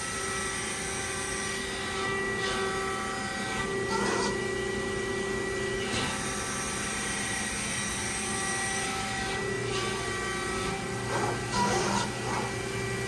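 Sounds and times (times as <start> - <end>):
hydraulic pump hum: 3.6 - 6.2, 9.4 - 13.0
held machine tones: 11.0 - 12.7.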